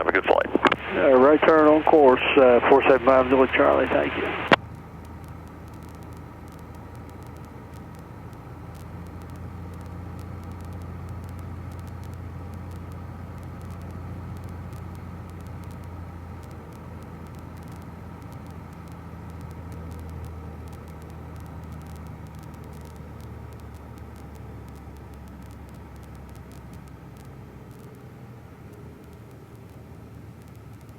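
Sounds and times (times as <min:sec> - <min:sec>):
light aircraft engine drone: 0:00.0 - 0:30.9.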